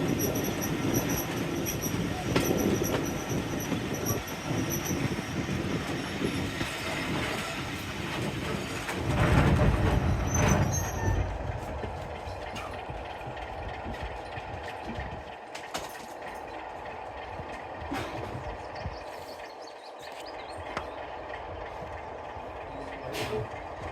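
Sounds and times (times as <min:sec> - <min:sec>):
high-pitched wheel squeal: 0:00.0 - 0:06.5, 0:10.0 - 0:11.6
low locomotive rumble: 0:00.0 - 0:23.9
train wheel and rail noise: 0:00.0 - 0:23.9.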